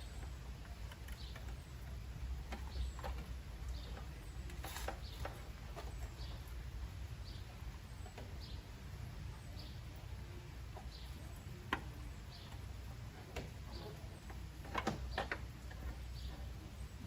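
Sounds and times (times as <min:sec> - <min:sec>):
sharp clicks and knocks: 0:11.7 - 0:16.4.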